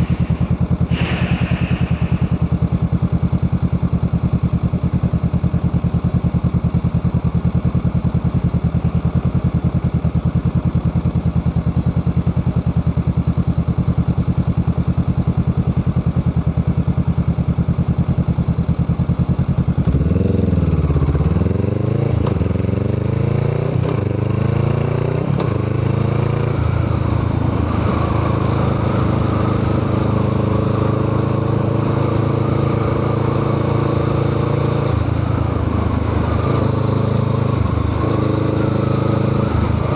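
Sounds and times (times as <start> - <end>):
motorcycle engine revving: 0.0 - 2.7, 19.9 - 39.9.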